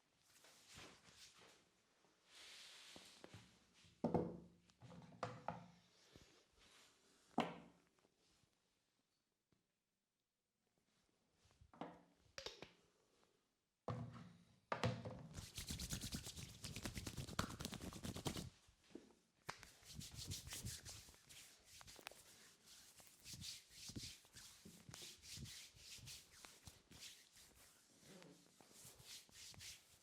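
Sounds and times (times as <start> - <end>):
hands rubbing and patting hair: 15.4 - 18.6, 19.5 - 30.0.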